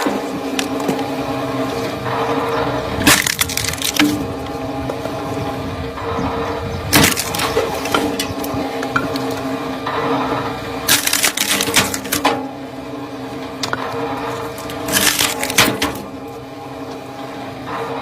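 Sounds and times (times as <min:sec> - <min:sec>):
firewood splitter engine running: 0:00.0 - 0:18.0
wood cracking and splintering: 0:02.9 - 0:05.3, 0:06.9 - 0:09.5, 0:10.9 - 0:12.4, 0:13.6 - 0:16.2.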